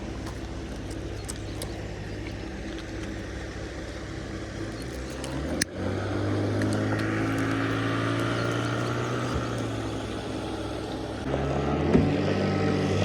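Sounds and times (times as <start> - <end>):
engine running: 0.0 - 13.0.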